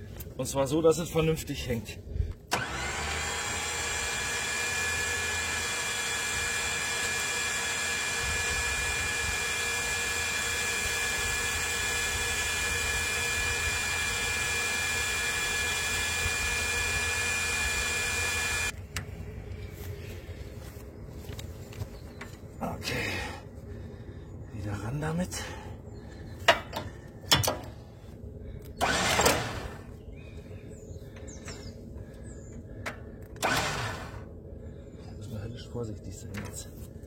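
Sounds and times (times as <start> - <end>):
electric winch motor whine: 2.5 - 18.8, 28.7 - 30.0, 31.1 - 34.8.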